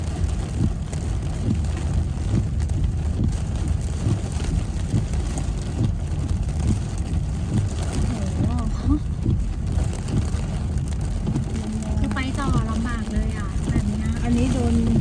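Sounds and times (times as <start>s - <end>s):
rain against car: 0.0s - 15.0s
road and engine noise: 0.0s - 15.0s
wind against car: 0.0s - 15.0s.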